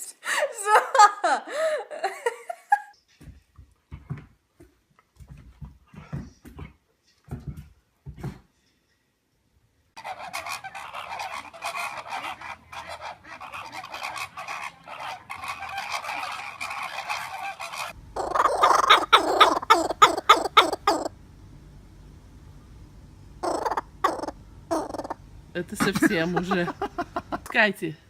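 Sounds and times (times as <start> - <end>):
geese honking: 10.0 - 21.1.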